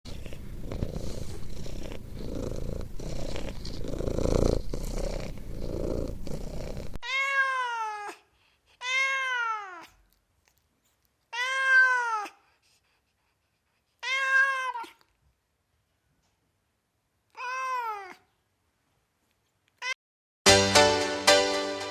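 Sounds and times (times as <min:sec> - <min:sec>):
cat purring: 0:00.1 - 0:07.0
cat meowing: 0:07.0 - 0:08.2, 0:08.8 - 0:10.0, 0:11.4 - 0:12.4, 0:14.0 - 0:15.0, 0:17.3 - 0:18.2.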